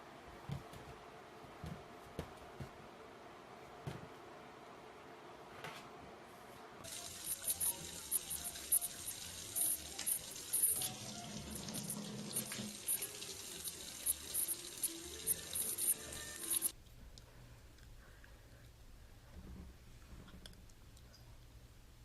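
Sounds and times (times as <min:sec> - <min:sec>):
water running into a sink: 0:06.8 - 0:16.7.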